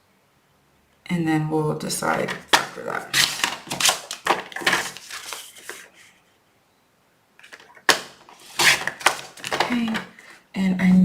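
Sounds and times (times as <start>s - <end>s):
cardstock scraping and rustling: 2.1s - 6.1s, 7.4s - 10.4s.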